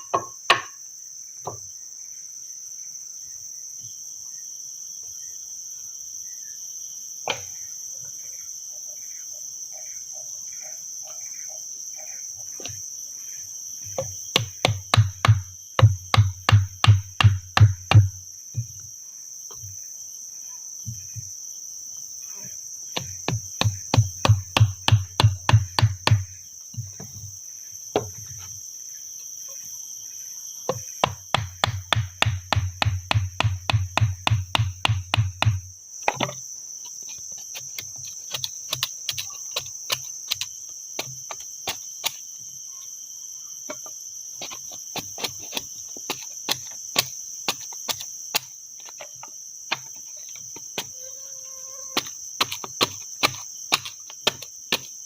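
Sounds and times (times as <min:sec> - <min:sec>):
crickets droning: 0:00.0 - 0:55.0.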